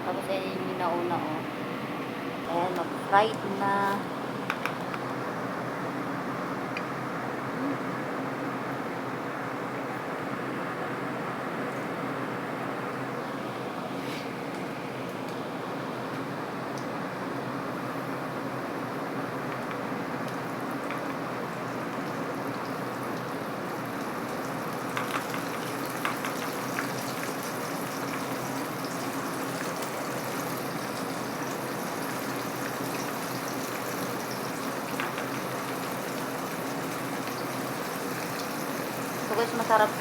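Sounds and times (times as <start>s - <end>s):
chicken deep-frying in oil: 14.1s - 40.0s
oil popping and crackling: 21.9s - 40.0s.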